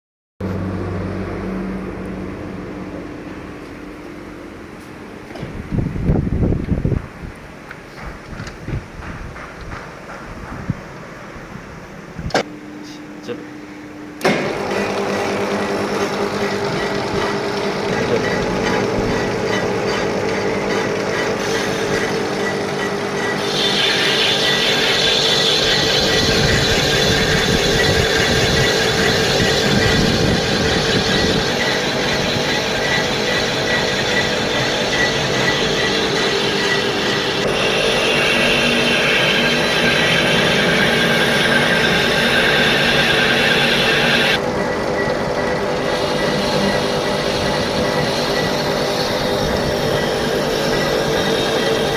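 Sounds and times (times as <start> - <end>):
lathe running: 14.2 - 51.9.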